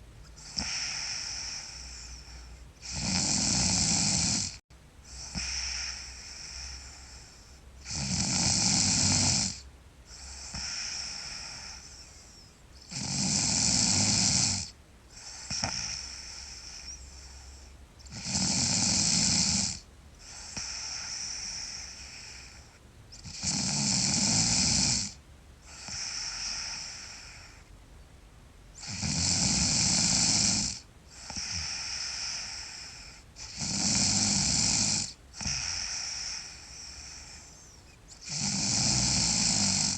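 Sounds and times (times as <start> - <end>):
girl snoring loudly: 0.4 - 2.0, 2.8 - 4.6, 5.2 - 6.8, 7.8 - 9.6, 12.9 - 14.7, 18.0 - 22.4, 23.2 - 27.4, 28.8 - 37.2, 38.2 - 39.9.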